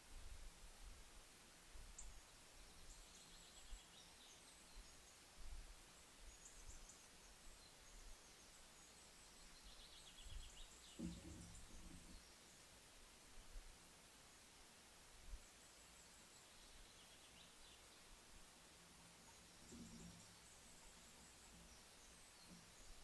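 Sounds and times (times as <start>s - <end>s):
distant birds chirping: 6.0s - 12.8s, 15.4s - 23.0s.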